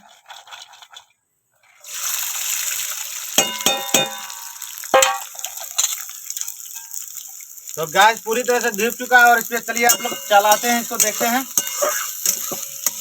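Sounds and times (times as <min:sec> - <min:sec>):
pan sizzling on gas stove: 0:01.8 - 0:13.0
metal utensil clanging: 0:03.4 - 0:06.0, 0:09.8 - 0:13.0.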